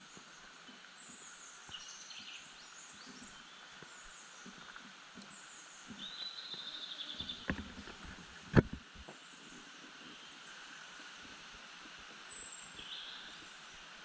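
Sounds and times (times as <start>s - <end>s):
small birds chirping: 0.0s - 8.2s, 12.2s - 13.8s.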